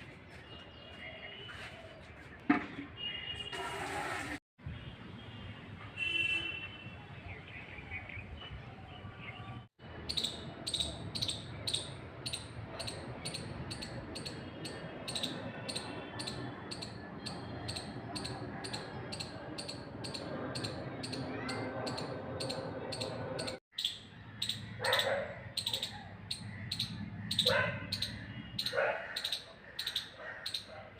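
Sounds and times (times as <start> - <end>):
animal high chirps: 10.1 - 30.1.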